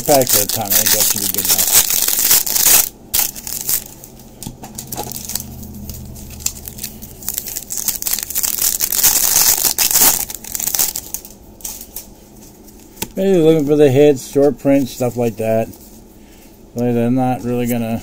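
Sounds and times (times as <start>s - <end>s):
card pack wrappers tearing: 0.0s - 4.2s, 4.8s - 5.5s, 6.2s - 11.9s.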